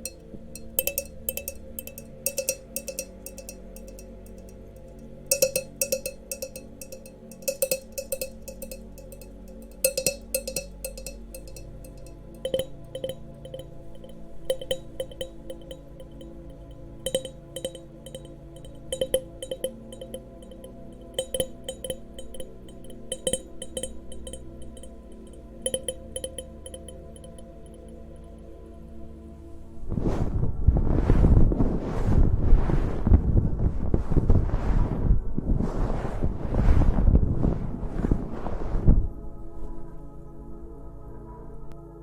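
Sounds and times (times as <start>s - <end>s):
glass goblets clinking: 0.0s - 4.5s, 5.3s - 27.9s.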